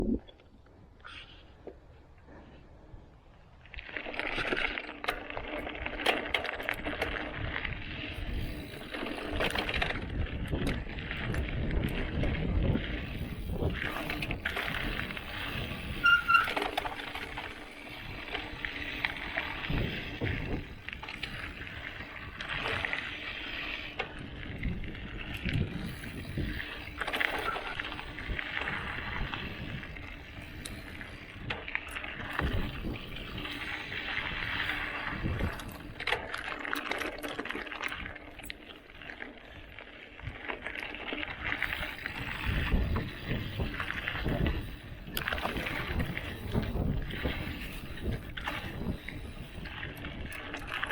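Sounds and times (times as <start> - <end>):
knobby tyres rolling on dirt: 0.0 - 50.9
bike frame rattling over bumps: 3.6 - 50.9
high squeak: 16.0 - 16.9.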